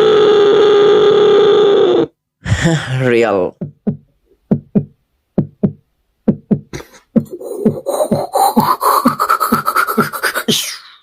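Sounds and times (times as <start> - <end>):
beatbox mouth-percussion thumps: 3.5 - 11.0.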